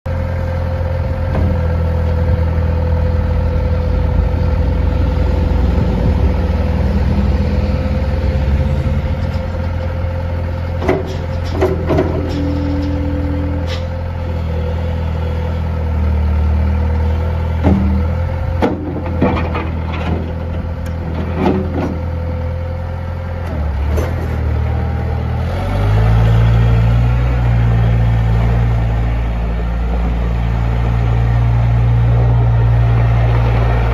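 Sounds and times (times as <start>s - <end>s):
diesel engine running: 0.1s - 33.9s
sharp knocks and clanks: 10.8s - 13.1s, 17.6s - 22.0s.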